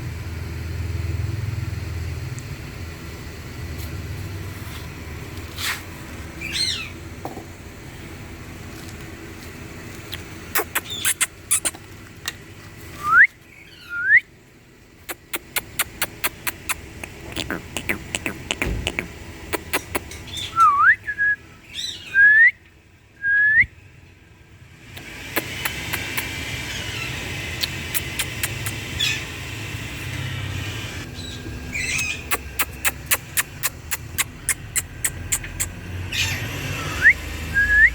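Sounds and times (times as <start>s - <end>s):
parrot whistling: 10.6s - 11.7s
rapid sharp clicks: 15.1s - 20.1s.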